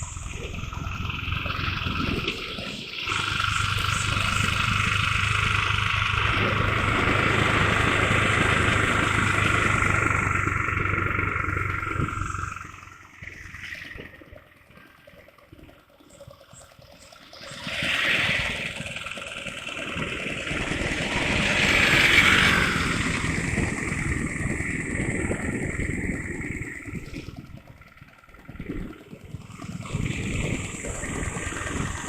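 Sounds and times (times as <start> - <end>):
rushing wind noise: 0.0 - 14.0, 19.9 - 27.8, 28.4 - 32.0
motorcycle engine: 0.0 - 32.0.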